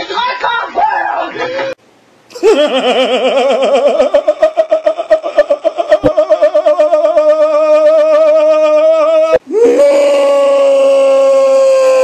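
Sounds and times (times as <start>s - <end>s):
person making high-pitched warble: 5.8s - 10.4s.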